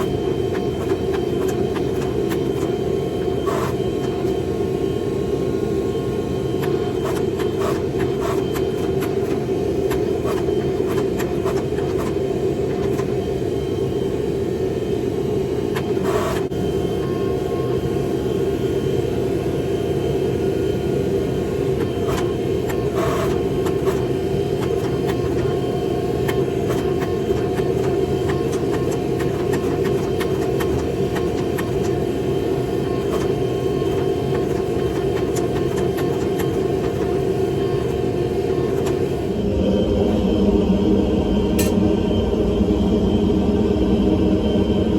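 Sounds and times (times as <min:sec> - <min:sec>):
forge roaring: 0:39.2 - 0:44.9.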